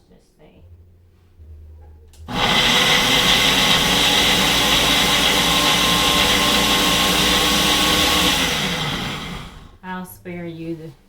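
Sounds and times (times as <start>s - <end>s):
blender motor whirring: 2.3s - 9.8s.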